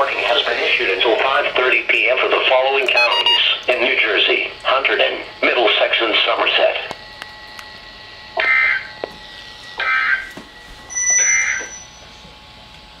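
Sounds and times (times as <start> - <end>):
shrill screeching data warble: 3.0 - 3.6, 10.9 - 12.1.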